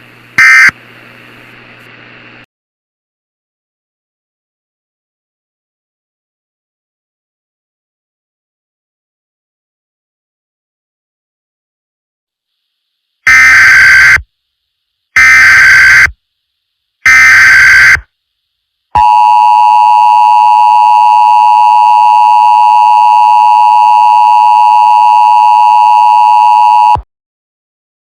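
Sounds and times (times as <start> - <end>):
digital header tones: 0.4 - 0.7.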